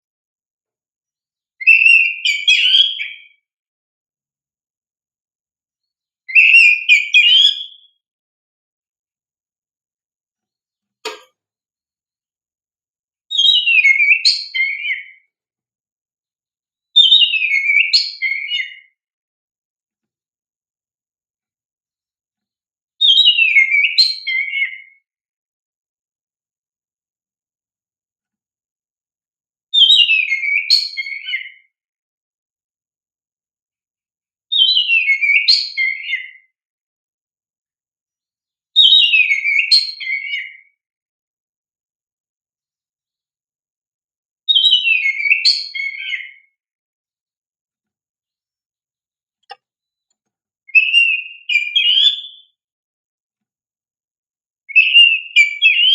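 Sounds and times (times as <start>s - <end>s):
magpie-robin singing: 1.6s - 3.4s, 6.3s - 8.0s, 13.3s - 15.3s, 16.9s - 19.0s, 23.0s - 25.0s, 29.7s - 31.7s, 34.5s - 36.5s, 38.8s - 40.8s, 44.5s - 46.6s, 50.7s - 52.6s, 54.7s - 55.9s.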